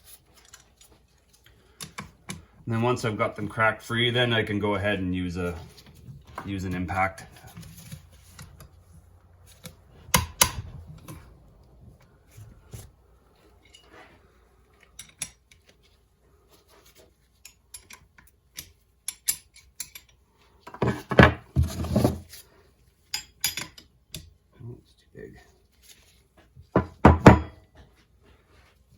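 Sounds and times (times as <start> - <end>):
metal tools clinking and scraping: 13.4 - 16.0, 16.6 - 22.4, 23.0 - 24.3.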